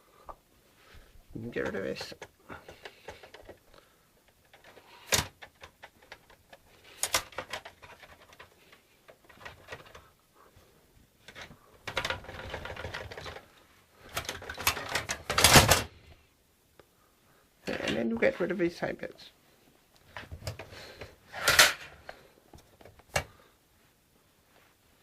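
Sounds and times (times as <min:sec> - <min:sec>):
plastic rubbing and rattling: 0:01.4 - 0:10.2, 0:11.2 - 0:16.0, 0:20.0 - 0:23.4
plastic casing panels clicking and snapping: 0:04.2 - 0:10.0, 0:14.1 - 0:15.9.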